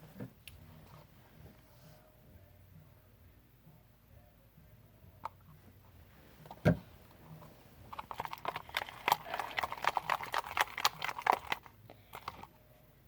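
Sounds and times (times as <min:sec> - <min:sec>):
thump: 0:06.6 - 0:06.9
slime being stirred: 0:07.9 - 0:12.5.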